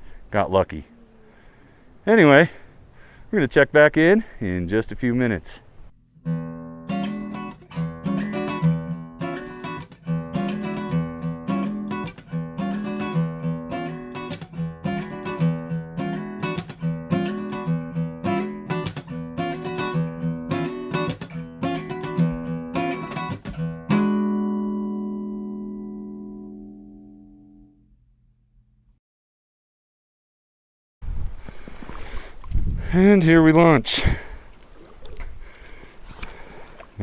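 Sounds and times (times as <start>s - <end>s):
acoustic guitar strumming: 6.0s - 28.0s.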